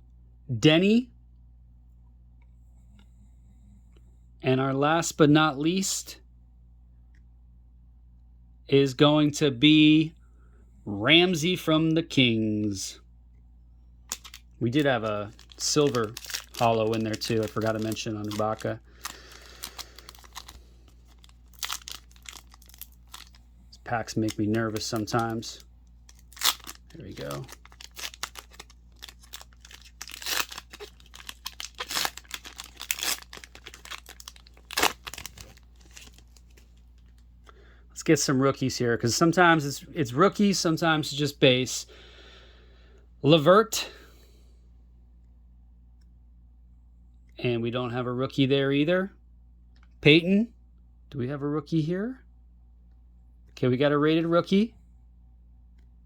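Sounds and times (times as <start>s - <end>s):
low steady hum: 0.0s - 56.0s
cellophane wrapper crinkling: 14.1s - 37.3s.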